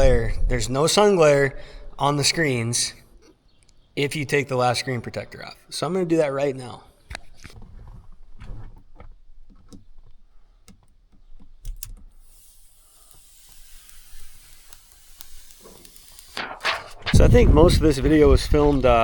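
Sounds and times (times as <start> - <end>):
screen protector film peeling hiss: 11.7 - 17.2.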